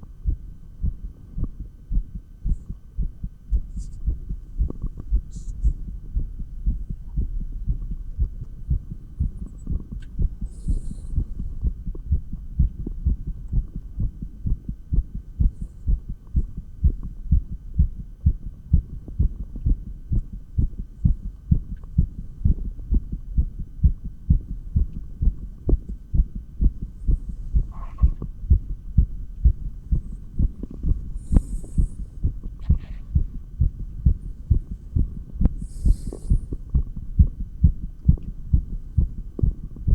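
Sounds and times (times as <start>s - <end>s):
heartbeat through stethoscope: 0.0s - 39.9s
faint scratchy noises: 26.9s - 35.3s.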